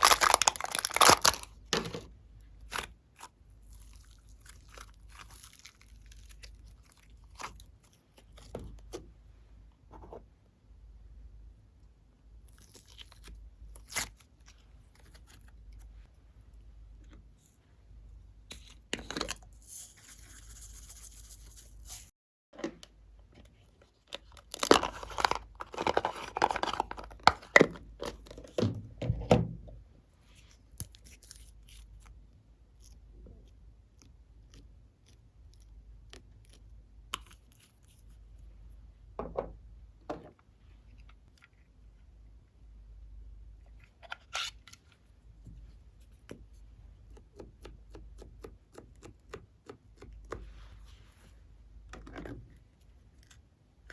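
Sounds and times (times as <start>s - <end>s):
slime crackling worked by hand: 0.0s - 2.0s.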